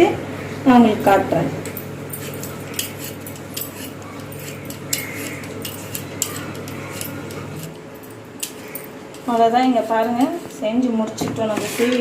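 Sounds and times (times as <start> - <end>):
peeler scraping potato: 2.2 - 7.8.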